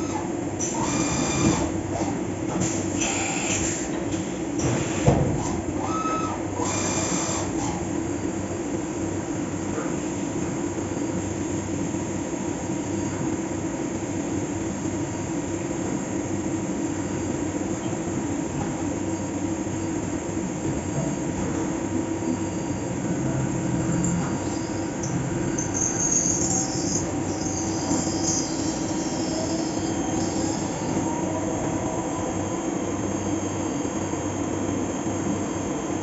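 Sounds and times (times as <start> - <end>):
milling machine running: 0.1 - 2.0, 22.2 - 35.8.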